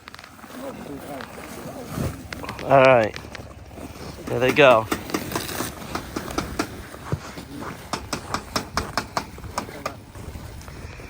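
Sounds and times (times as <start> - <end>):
tent fabric crunching: 0.0 - 7.9.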